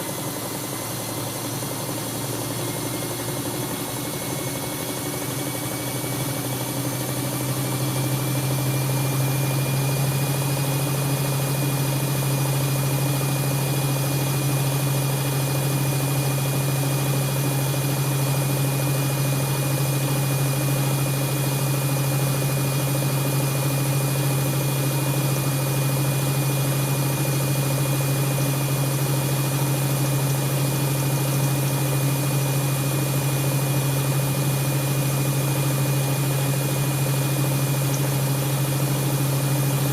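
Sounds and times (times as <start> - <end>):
washing machine humming: 0.0 - 39.9.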